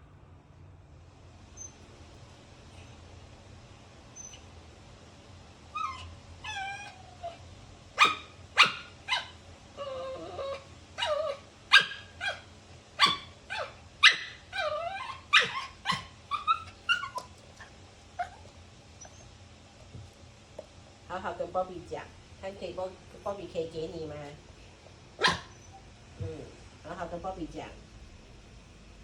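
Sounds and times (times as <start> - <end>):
dog whining: 1.5 - 1.8, 4.1 - 4.5, 5.7 - 19.4, 25.2 - 26.0
dog barking and yipping: 8.0 - 9.4, 10.5 - 19.3, 25.2 - 25.9.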